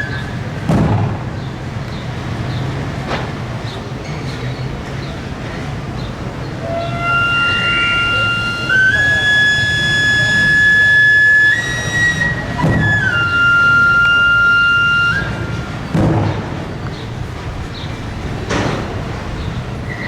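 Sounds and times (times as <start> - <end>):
low thumps: 0.6 - 1.6, 6.6 - 14.2, 15.9 - 19.4
shawm playing long notes: 6.4 - 16.0.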